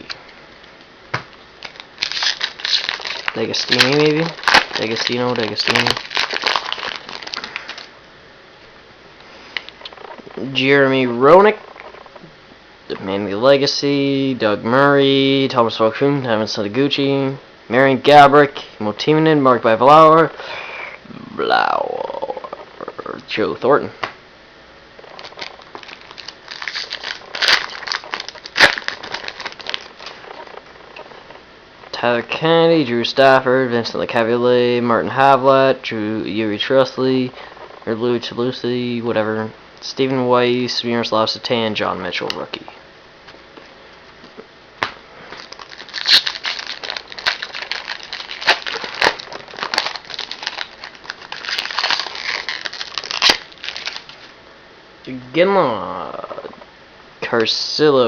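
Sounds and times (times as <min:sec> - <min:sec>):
plastic wrapper crinkling: 0:01.6 - 0:07.9, 0:25.0 - 0:31.2, 0:44.8 - 0:54.3.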